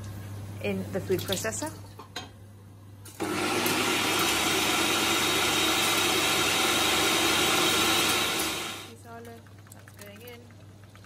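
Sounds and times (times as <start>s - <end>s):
food processor motor running: 3.2s - 8.9s.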